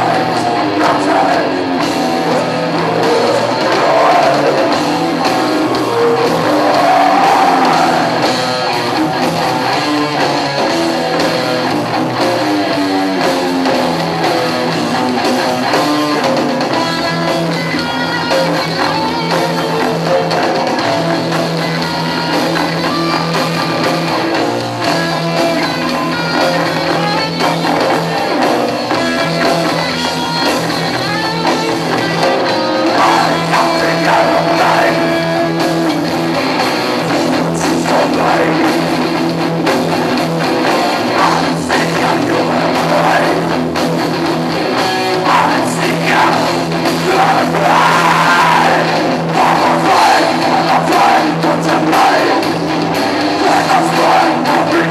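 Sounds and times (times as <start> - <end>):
person singing: 0.0 - 10.0, 31.6 - 36.1, 37.1 - 39.2, 40.8 - 43.6, 45.0 - 52.6, 53.2 - 54.9
bass guitar: 0.0 - 54.9
distorted electric guitars: 0.0 - 54.9
drum kit: 0.0 - 54.9.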